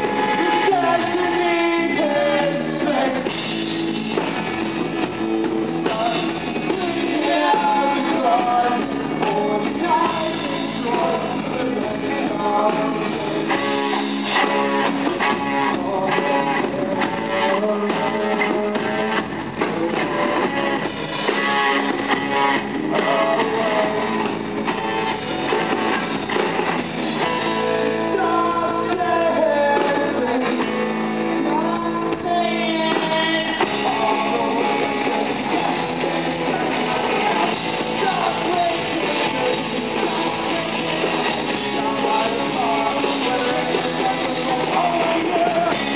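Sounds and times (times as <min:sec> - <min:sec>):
steady drum beat: 0:00.0 - 0:31.0, 0:31.8 - 0:45.9
person singing: 0:00.0 - 0:45.9
strummed guitars: 0:00.0 - 0:45.9.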